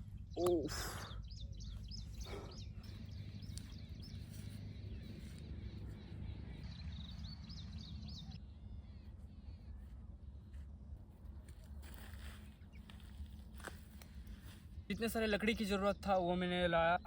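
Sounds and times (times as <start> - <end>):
small birds chirping: 0.0 - 10.8
low outdoor rumble: 0.0 - 15.5.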